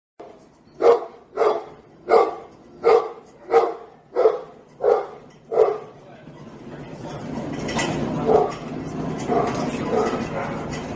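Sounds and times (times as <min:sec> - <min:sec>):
dog barking: 0:00.8 - 0:05.9, 0:08.2 - 0:08.6, 0:09.3 - 0:10.7.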